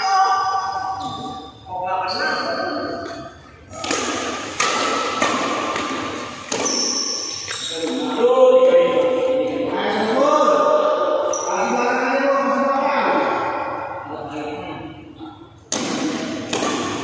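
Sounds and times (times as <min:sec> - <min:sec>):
badminton racket hitting shuttlecock: 0:03.8 - 0:07.5, 0:15.7 - 0:17.0.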